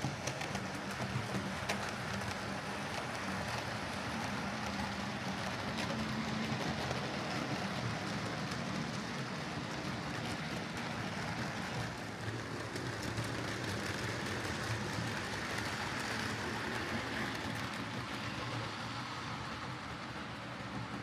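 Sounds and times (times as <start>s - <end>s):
wheels rumbling on rails: 0.0s - 21.0s.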